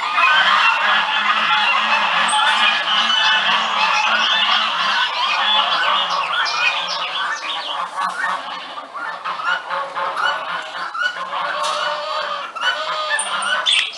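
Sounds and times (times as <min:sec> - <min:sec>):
geese honking: 0:00.0 - 0:13.9.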